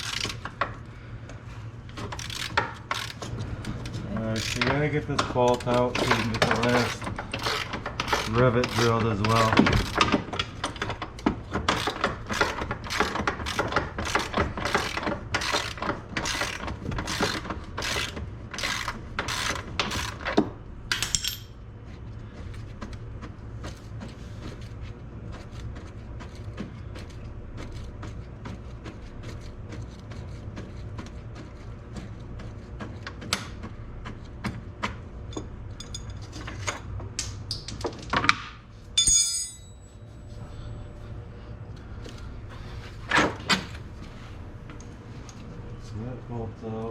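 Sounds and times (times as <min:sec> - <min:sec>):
tool clatter: 0:02.0 - 0:21.6, 0:39.0 - 0:40.0
ratchet wrench clicking: 0:02.2 - 0:03.2.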